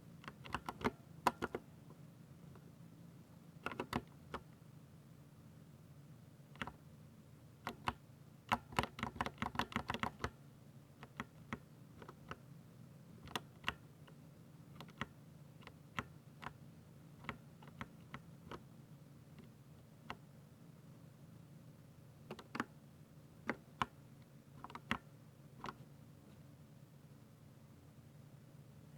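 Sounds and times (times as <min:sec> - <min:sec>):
mechanical keyboard typing: 0:00.2 - 0:01.6, 0:03.6 - 0:04.5, 0:07.7 - 0:10.4, 0:13.3 - 0:13.8, 0:14.8 - 0:16.6, 0:24.6 - 0:25.0.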